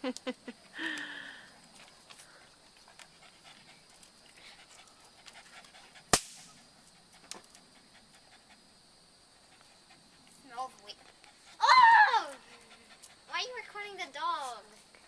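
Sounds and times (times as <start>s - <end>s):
dog panting softly: 1.5s - 11.6s, 12.3s - 13.8s
firecracker pop: 6.1s - 6.6s.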